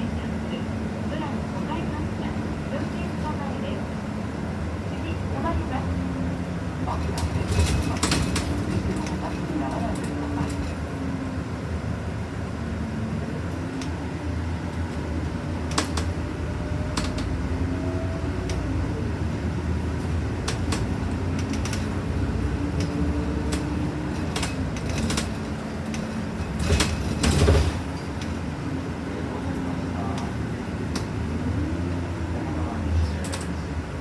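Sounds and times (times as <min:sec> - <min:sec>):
bus engine rumble: 0:00.0 - 0:34.0
sharp rattles: 0:07.0 - 0:10.8, 0:22.7 - 0:28.4
loud clatter: 0:22.8 - 0:28.4.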